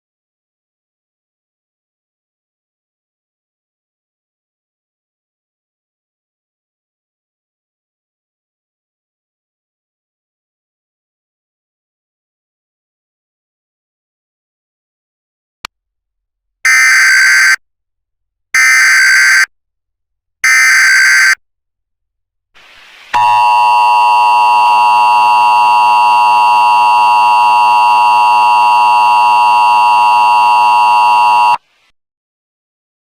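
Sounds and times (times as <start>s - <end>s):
loud buzzy attention signal: 16.7s - 17.6s, 18.6s - 19.5s, 20.4s - 21.4s, 23.2s - 31.6s.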